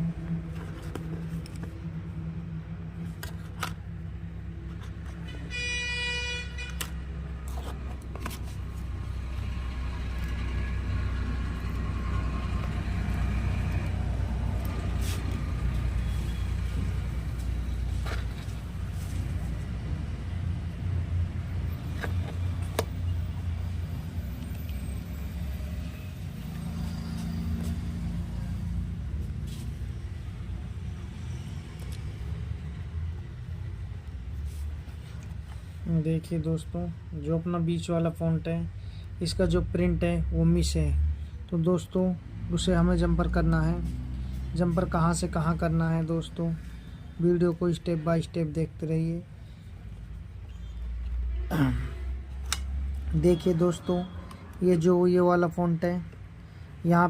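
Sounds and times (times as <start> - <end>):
road traffic rumble: 0.0 - 57.0
car horn toot: 5.5 - 7.0.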